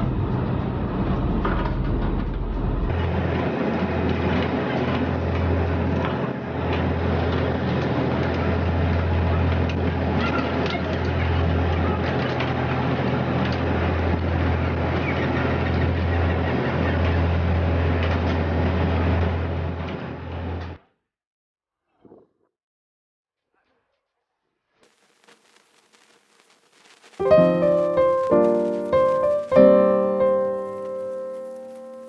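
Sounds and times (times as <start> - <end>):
low engine drone: 0.0 - 9.9.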